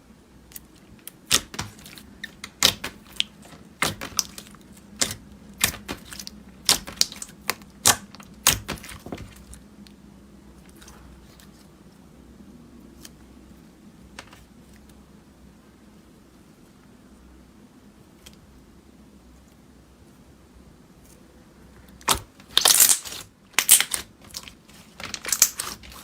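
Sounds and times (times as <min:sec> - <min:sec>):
slime clicking and popping: 0:00.5 - 0:09.3, 0:22.0 - 0:26.0.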